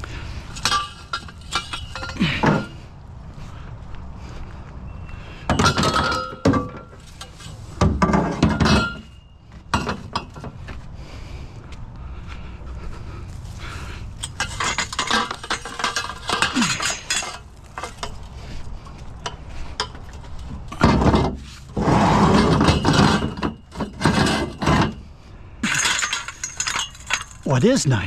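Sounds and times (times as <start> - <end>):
scrap metal clattering: 0.2 - 2.9, 5.5 - 10.6, 13.6 - 27.4.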